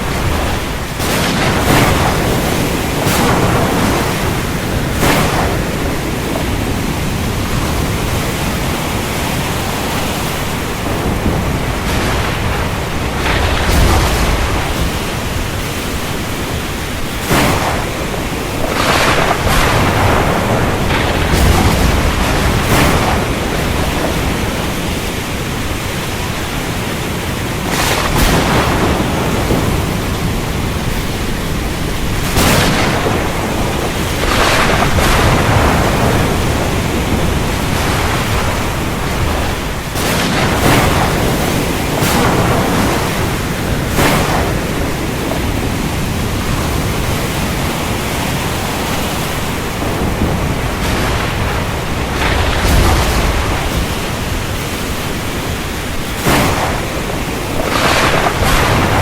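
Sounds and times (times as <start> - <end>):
heavy rain hissing: 0.0 - 59.0
sharp thunder cracks: 0.0 - 59.0.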